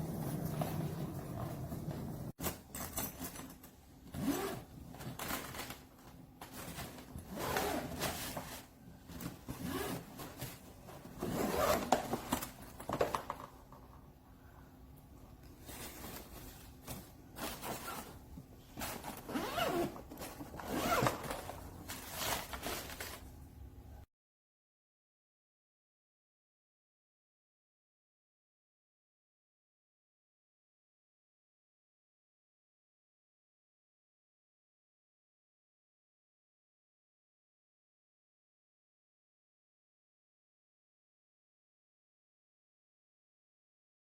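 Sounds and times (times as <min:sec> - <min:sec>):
suitcase zipper being pulled: 0:04.1 - 0:04.7, 0:07.2 - 0:08.4, 0:11.2 - 0:12.1, 0:18.8 - 0:21.4.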